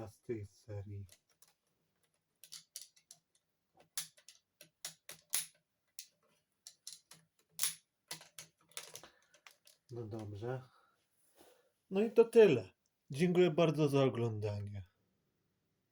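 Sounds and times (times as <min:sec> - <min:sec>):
hard plastic toy clicks: 0:03.9 - 0:05.6.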